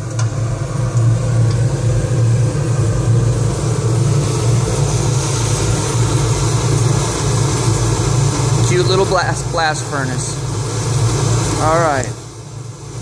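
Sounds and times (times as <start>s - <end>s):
furnace roaring: 0.0s - 13.0s.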